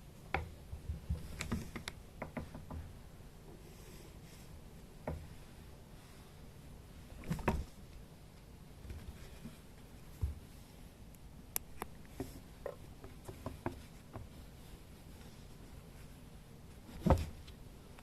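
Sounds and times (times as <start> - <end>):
kittens playing with light clicks: 0.3 - 2.8.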